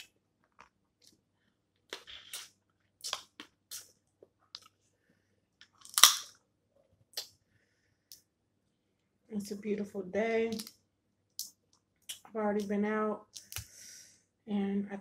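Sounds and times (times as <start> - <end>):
crab shells cracking: 5.7 - 6.4.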